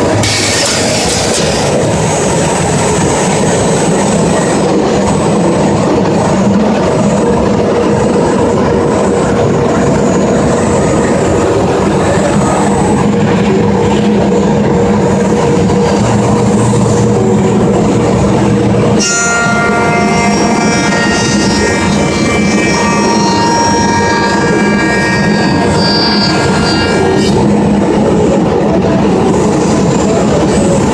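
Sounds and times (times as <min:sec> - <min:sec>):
cnc router machining: 0:18.3 - 0:28.1.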